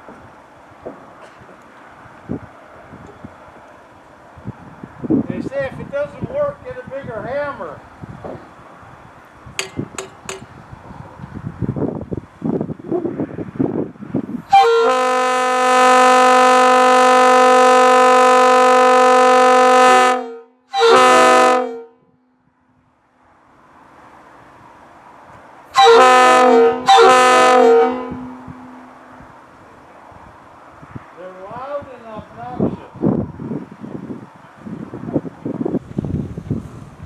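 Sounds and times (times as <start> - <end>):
knocking and clatter: 9.6 - 10.5
locomotive air horn blasts: 14.5 - 22.2, 25.7 - 29.2.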